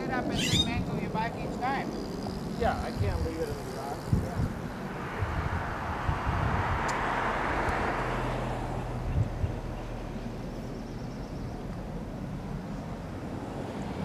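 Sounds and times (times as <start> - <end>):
vehicle passing by: 0.3 - 10.8.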